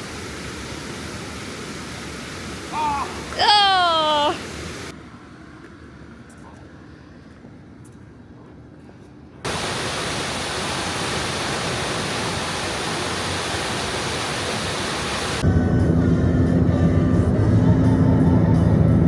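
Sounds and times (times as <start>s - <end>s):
rushing falling water: 0.0s - 4.9s, 9.5s - 15.4s.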